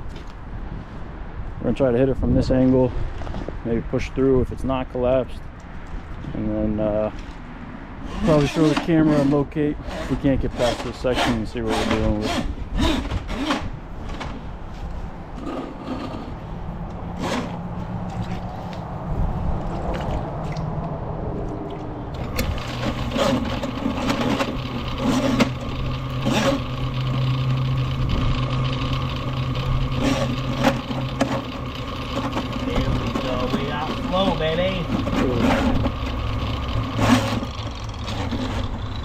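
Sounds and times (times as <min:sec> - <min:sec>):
scraping in sewer pipe: 0:08.0 - 0:16.5, 0:17.1 - 0:18.9, 0:22.1 - 0:27.4, 0:29.6 - 0:36.2, 0:36.8 - 0:39.0
drain-cleaning machine humming: 0:22.1 - 0:39.0.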